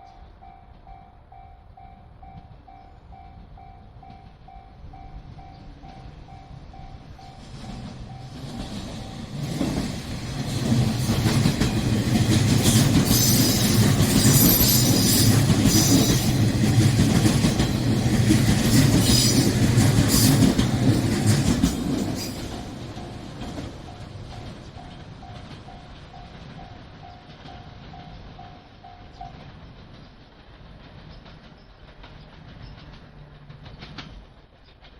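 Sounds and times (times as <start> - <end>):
train wheel squeal: 0.0 - 23.3
train wheels rumbling on rail: 0.0 - 34.9.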